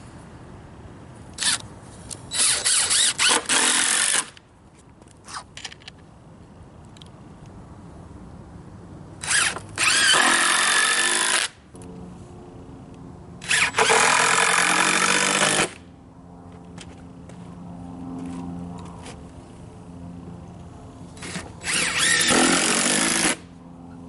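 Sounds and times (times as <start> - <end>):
power drill running: 9.2 - 11.5, 21.2 - 23.4.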